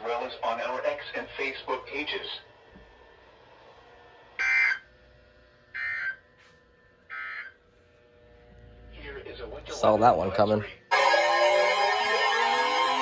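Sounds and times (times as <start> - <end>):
short buzzing data bursts: 4.4 - 4.9, 5.7 - 6.2.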